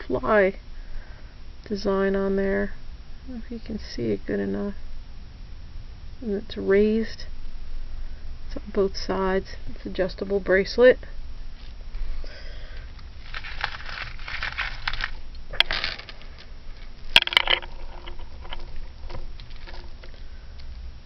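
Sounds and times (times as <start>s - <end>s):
jewelry rustling and scraping: 11.5s - 12.2s, 12.8s - 20.3s.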